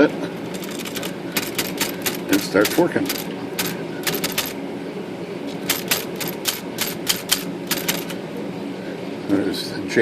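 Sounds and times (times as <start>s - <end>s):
typewriter type bar clacking: 0.5s - 4.6s, 5.6s - 8.2s.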